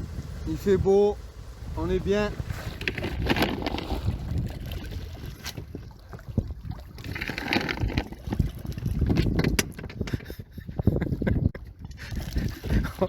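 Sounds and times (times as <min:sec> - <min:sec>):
wind buffeting microphone: 0:00.0 - 0:13.0
knocks and clicks: 0:09.2 - 0:10.2.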